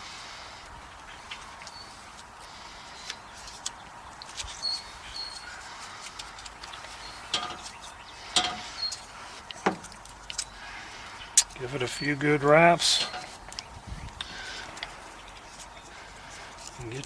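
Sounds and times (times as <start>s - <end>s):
high bird chirps: 6.6s - 9.7s.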